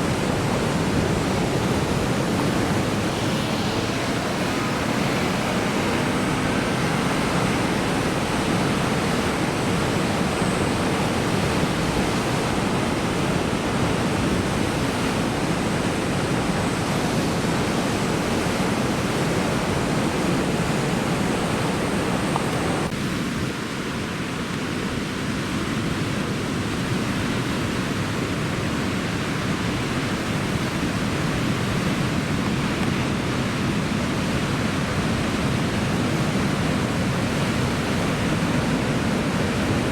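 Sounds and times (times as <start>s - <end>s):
surf breaking on rocks: 0.0s - 9.7s.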